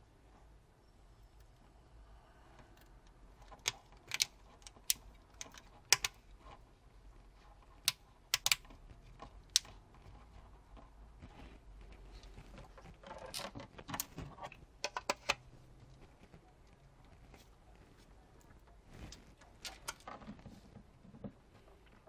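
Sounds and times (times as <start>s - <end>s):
phone parts clicking into place: 2.8s - 6.2s, 7.8s - 8.7s, 14.8s - 15.4s.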